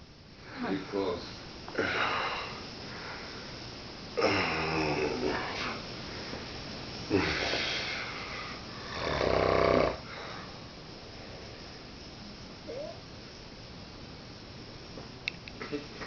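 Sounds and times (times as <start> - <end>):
man snoring: 4.2 - 5.8, 8.9 - 10.1.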